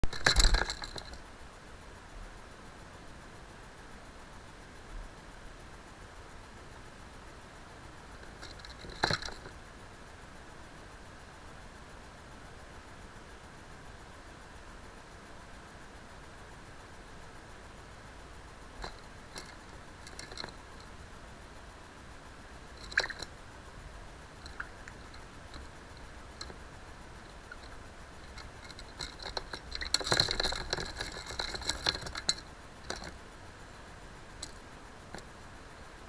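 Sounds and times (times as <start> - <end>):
budgie clicking and chirping: 22.7 - 23.4, 24.4 - 33.2.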